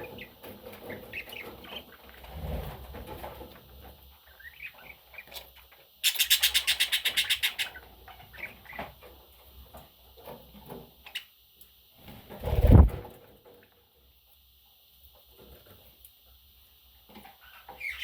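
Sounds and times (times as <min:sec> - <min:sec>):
budgerigar chirping: 0:06.0 - 0:08.8.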